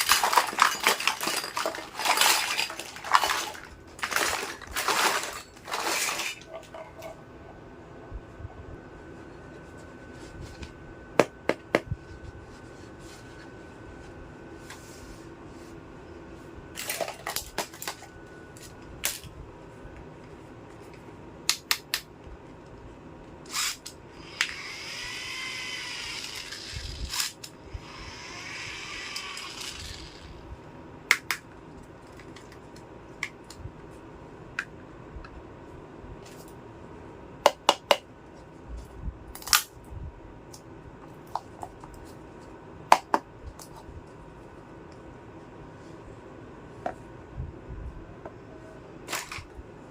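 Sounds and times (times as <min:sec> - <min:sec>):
plastic toy scraping: 0:00.0 - 0:07.1.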